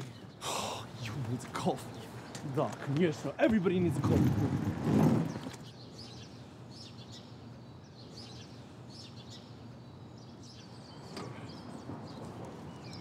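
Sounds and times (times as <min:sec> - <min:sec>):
small birds chirping: 0:00.0 - 0:04.3, 0:05.2 - 0:13.0.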